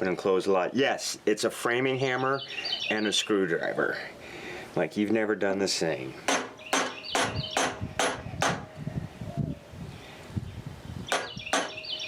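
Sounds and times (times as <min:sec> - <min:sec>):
hammer striking a screwdriver: 0:06.3 - 0:08.7, 0:11.1 - 0:11.8.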